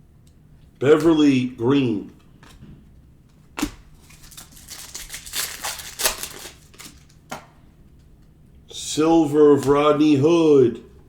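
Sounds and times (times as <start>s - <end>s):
cards rustling and crinkling: 2.0s - 7.6s.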